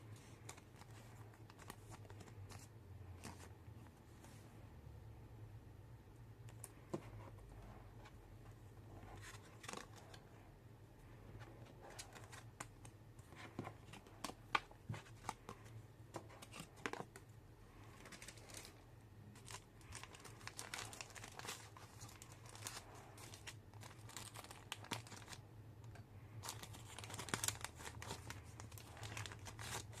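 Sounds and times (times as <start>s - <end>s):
packaging crinkling and tearing: 18.0s - 18.8s, 19.4s - 25.4s, 26.4s - 30.0s.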